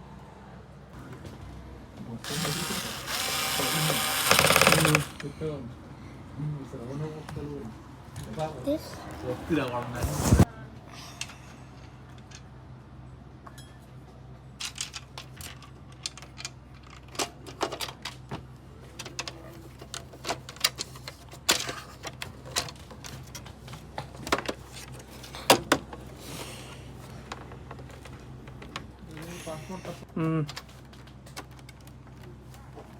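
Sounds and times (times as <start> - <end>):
small parts and tools clicking: 2.2 - 5.3.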